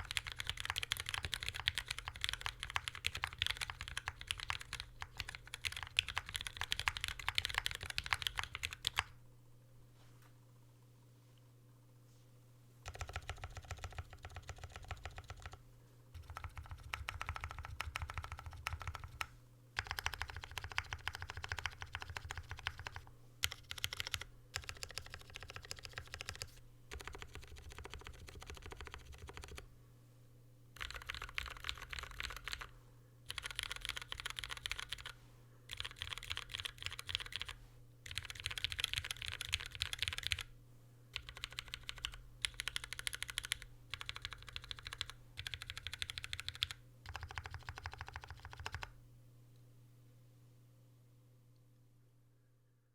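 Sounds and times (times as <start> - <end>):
keyboard typing clacks: 0.0 - 9.1, 12.8 - 15.6, 16.2 - 29.6, 30.8 - 32.7, 33.3 - 40.5, 41.2 - 48.9.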